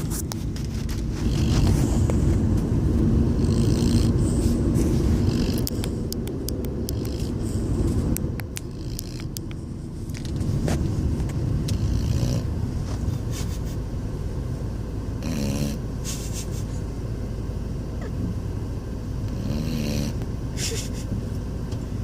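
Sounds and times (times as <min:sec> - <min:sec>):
person snoring: 0:03.3 - 0:04.3, 0:05.2 - 0:05.8, 0:11.7 - 0:12.5, 0:15.2 - 0:15.8, 0:19.3 - 0:20.2.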